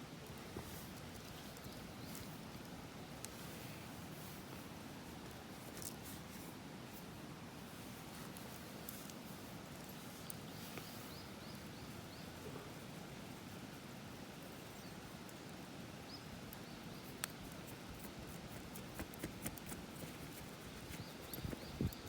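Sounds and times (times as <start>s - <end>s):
outdoor background noise: 0.0s - 22.0s
wood fire crackling: 16.2s - 22.0s.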